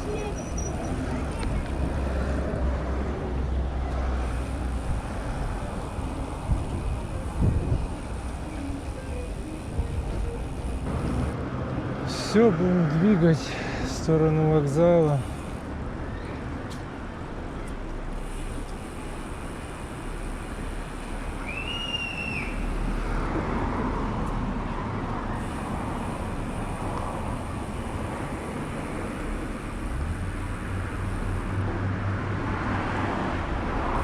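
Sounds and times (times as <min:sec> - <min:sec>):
bicycle road noise: 0:00.0 - 0:34.0
traffic: 0:00.0 - 0:34.0
wind rushing over microphone: 0:04.7 - 0:08.2.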